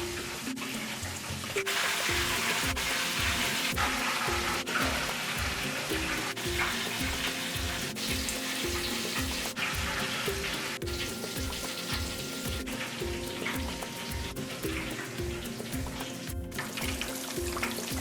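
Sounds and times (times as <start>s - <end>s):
background music with steady beat: 0.0s - 18.0s
fish frying in hot oil: 1.6s - 13.9s.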